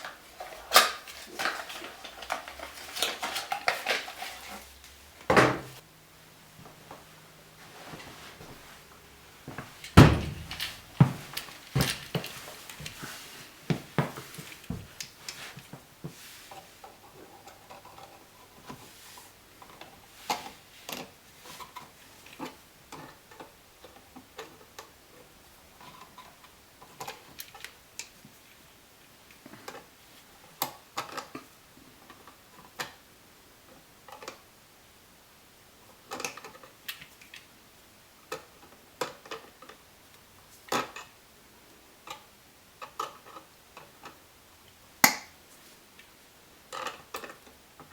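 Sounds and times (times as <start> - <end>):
hand tools clicking and tapping: 9.8 - 13.0
louder knocks: 10.0 - 10.8.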